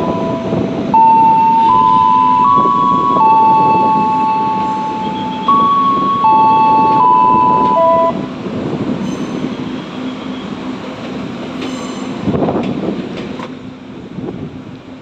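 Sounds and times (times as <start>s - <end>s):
electric train horn two-tone tune: 0.0s - 8.3s
train running rumble: 0.0s - 15.0s.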